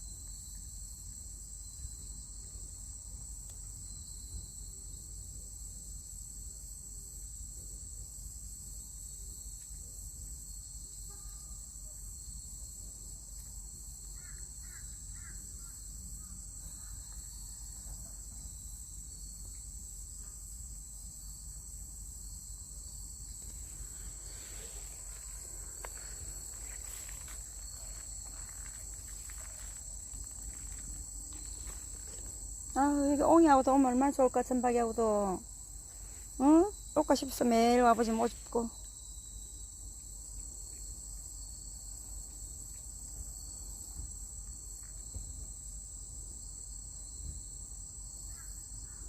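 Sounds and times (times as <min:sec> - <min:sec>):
insects chirring: 0:00.0 - 0:49.0
light rustling: 0:23.2 - 0:33.2.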